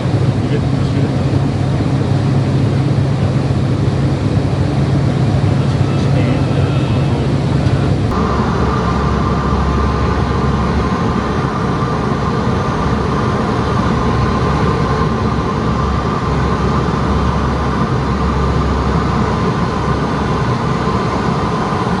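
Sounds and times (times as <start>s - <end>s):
turboprop engines droning: 0.0s - 22.0s.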